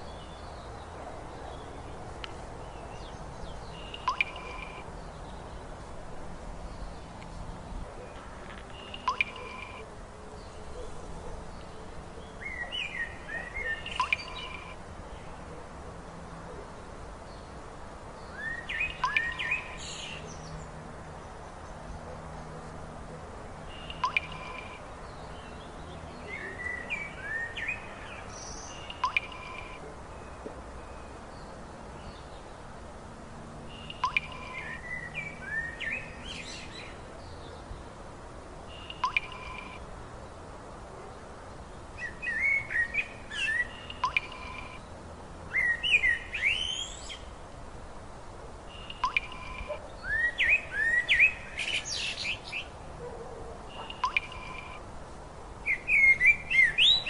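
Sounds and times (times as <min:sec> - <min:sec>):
small birds chirping: 0:00.0 - 0:06.0, 0:06.6 - 0:15.7, 0:17.2 - 0:22.7, 0:23.6 - 0:32.7, 0:33.7 - 0:38.0, 0:38.6 - 0:39.9, 0:41.1 - 0:47.4, 0:48.7 - 0:52.8, 0:53.7 - 0:54.8, 0:55.6 - 0:57.0
background hiss: 0:00.0 - 0:57.0
sharp click with held tone: 0:03.9 - 0:04.8, 0:08.9 - 0:09.8, 0:48.9 - 0:49.7, 0:53.8 - 0:54.8.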